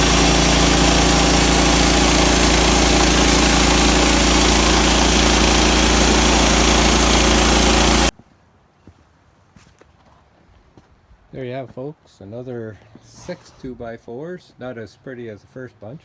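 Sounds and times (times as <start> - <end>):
sawmill engine running: 0.0 - 8.1.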